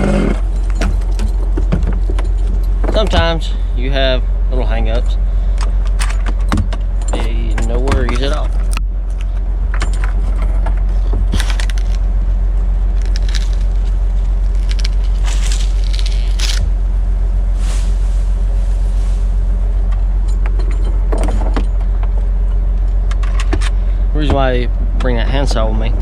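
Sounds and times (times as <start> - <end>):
truck engine running: 0.0 - 26.0
scraping crackling noises: 10.2 - 12.1, 12.9 - 16.7.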